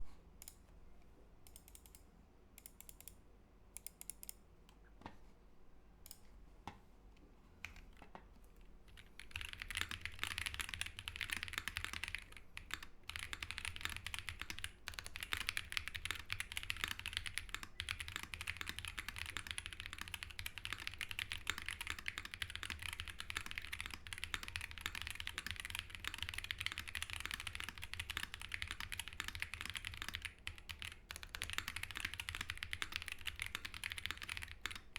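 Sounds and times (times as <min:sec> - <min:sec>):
mechanical keyboard typing: 0:08.9 - 0:34.9.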